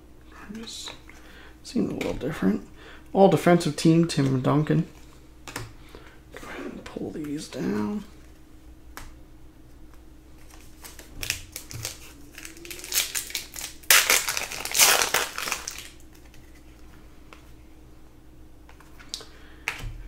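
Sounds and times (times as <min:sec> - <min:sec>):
card pack wrappers crinkling: 0:10.4 - 0:16.8.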